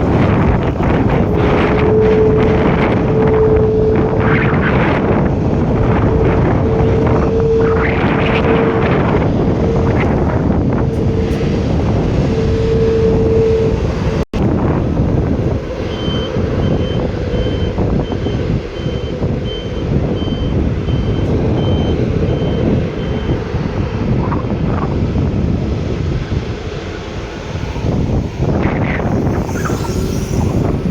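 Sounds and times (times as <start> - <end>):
low tone: 0.0 - 24.4
loud steady rumble: 0.0 - 30.9
reversing alarm beeping: 1.2 - 4.9, 5.6 - 14.2, 15.3 - 23.8, 29.1 - 30.9.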